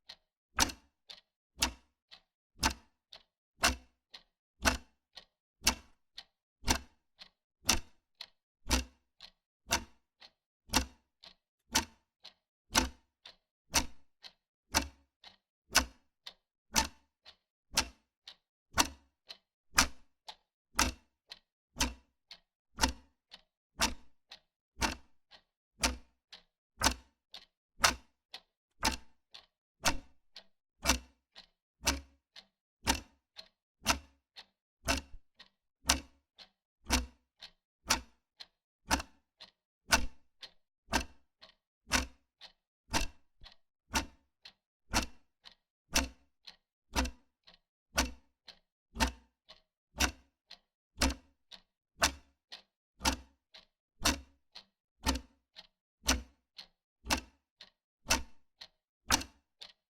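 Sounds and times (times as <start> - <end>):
wall clock ticking: 7.7 - 9.8, 19.8 - 21.0, 24.8 - 25.1, 25.8 - 36.2, 36.9 - 44.2, 44.9 - 46.6, 49.0 - 50.6, 57.1 - 59.8.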